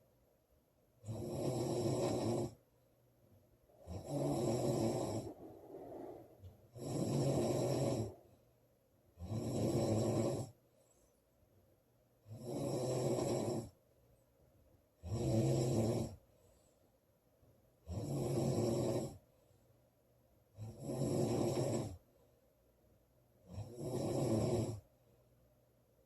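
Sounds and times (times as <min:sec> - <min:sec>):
woman snoring loudly: 0:01.0 - 0:02.6, 0:03.8 - 0:08.2, 0:09.2 - 0:10.5, 0:12.3 - 0:13.7, 0:15.0 - 0:16.2, 0:17.9 - 0:19.2, 0:20.6 - 0:22.0, 0:23.6 - 0:24.8.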